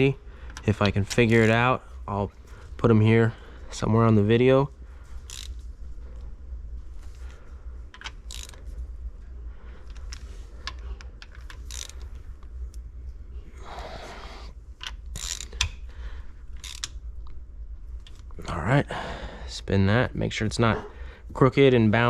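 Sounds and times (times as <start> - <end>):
steady low hum: 0.0 - 22.0
ratchet wrench clicking on metal: 5.2 - 5.6, 8.0 - 8.6, 11.2 - 12.1, 14.8 - 15.8, 16.6 - 17.0.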